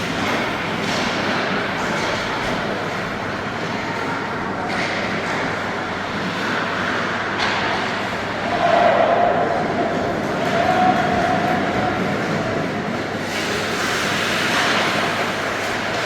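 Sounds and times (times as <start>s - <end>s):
echoing skating and play noise: 0.0s - 16.0s.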